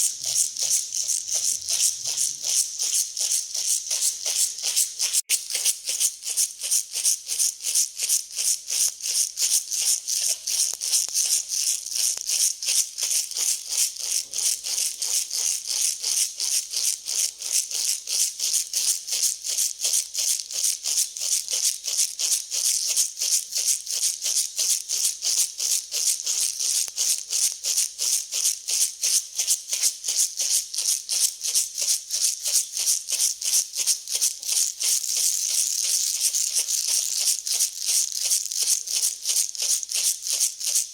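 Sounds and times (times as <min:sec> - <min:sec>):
dry grain rattling: 0:00.0 - 0:06.7, 0:07.3 - 0:18.8, 0:20.4 - 0:40.9.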